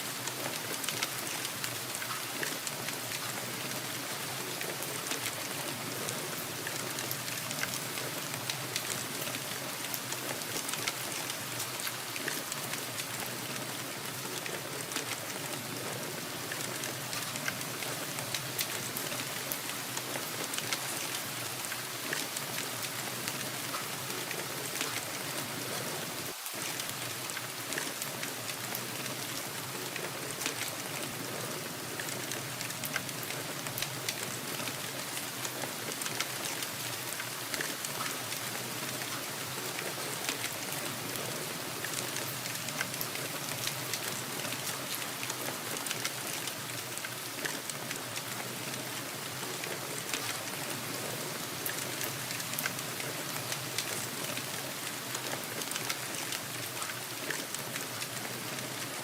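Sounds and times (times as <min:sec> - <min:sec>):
rain hiss: 0:00.0 - 0:59.0
raindrops ticking: 0:00.1 - 0:59.0.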